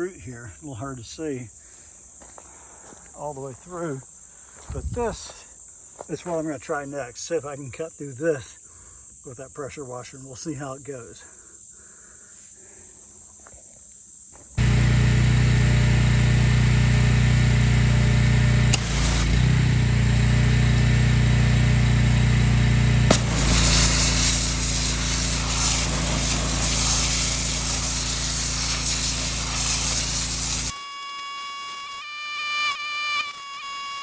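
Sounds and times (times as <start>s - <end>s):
pressure washer engine drone: 14.6s - 30.8s
high-pressure water jet hissing: 14.6s - 34.0s.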